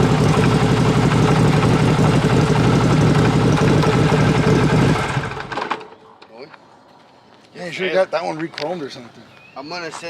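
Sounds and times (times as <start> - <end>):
motorcycle engine idling: 0.0 - 5.6.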